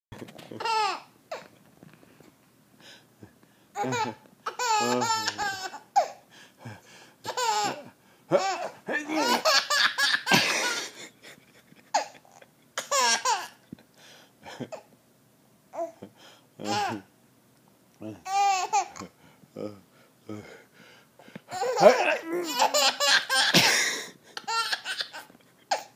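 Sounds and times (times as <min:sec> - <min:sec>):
baby giggling: 0:00.4 - 0:01.5, 0:03.8 - 0:06.2, 0:07.3 - 0:13.6, 0:16.6 - 0:17.0, 0:21.5 - 0:23.8, 0:24.4 - 0:25.9.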